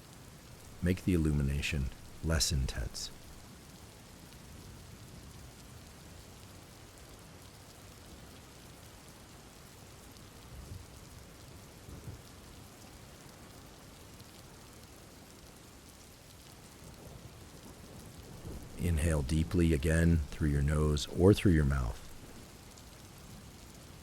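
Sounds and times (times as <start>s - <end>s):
steady rain falling: 0.0s - 24.0s
distant thunder rumbles: 18.2s - 22.4s.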